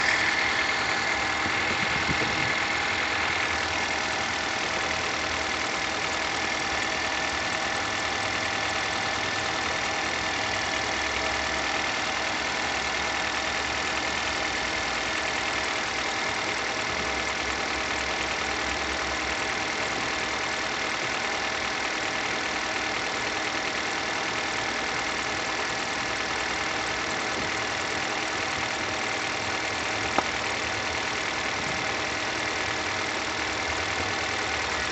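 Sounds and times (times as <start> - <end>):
drive belt squealing: 0.0 - 16.4
car engine idling: 0.0 - 34.9.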